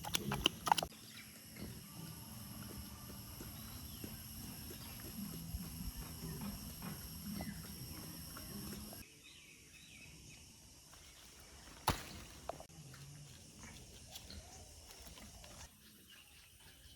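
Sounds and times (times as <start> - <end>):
farm animal sounds: 0.0 - 9.0.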